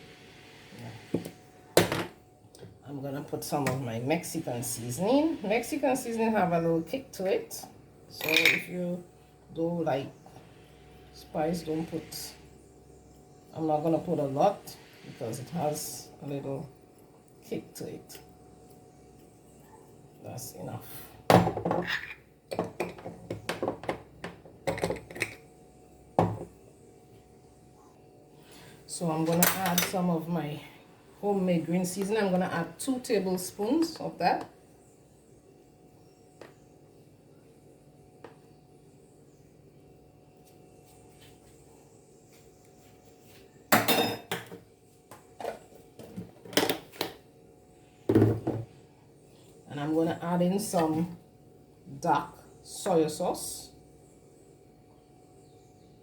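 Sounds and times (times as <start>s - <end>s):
kitchen utensils clattering: 43.8s - 44.6s.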